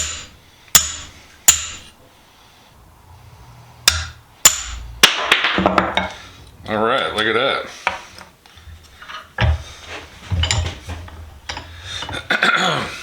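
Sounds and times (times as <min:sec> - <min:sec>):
hammer striking metal punch: 0:00.0 - 0:01.9, 0:03.9 - 0:06.2
metal clatter: 0:10.2 - 0:12.3.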